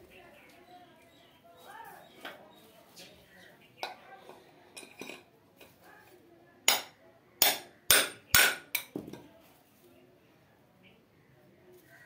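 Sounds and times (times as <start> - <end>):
hammer striking metal: 6.7 - 8.9.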